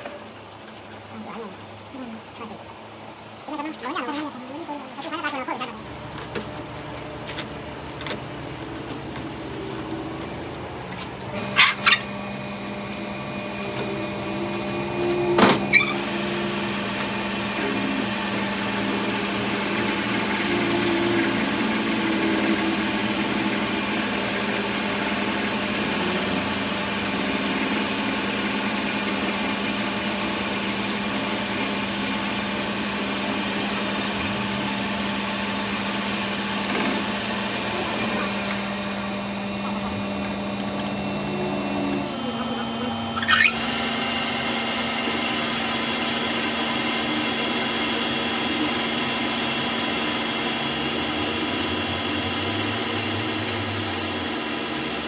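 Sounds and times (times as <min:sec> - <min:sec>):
workshop machine humming: 0:00.0 - 0:55.0.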